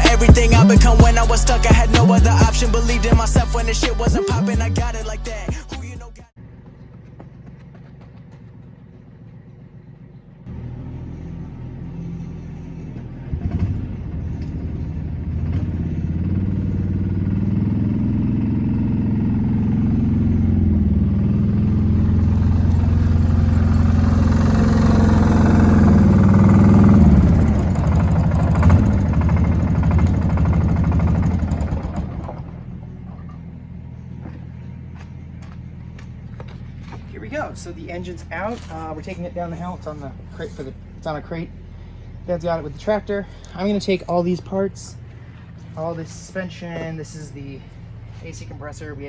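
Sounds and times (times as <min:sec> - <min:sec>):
tractor engine running: 0:00.0 - 0:49.0
clunks: 0:06.4 - 0:17.4, 0:20.5 - 0:49.0.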